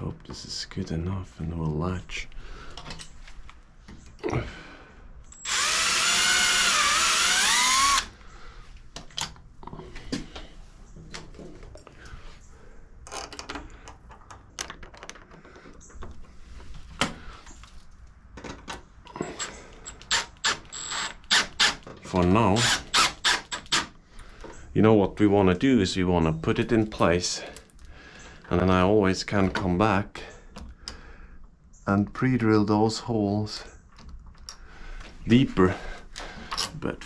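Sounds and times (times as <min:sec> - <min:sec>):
power drill driving screw into wood: 0:05.4 - 0:08.1, 0:19.3 - 0:21.8, 0:22.6 - 0:23.9
hardware clicks and knocks: 0:13.1 - 0:16.3, 0:18.3 - 0:19.5.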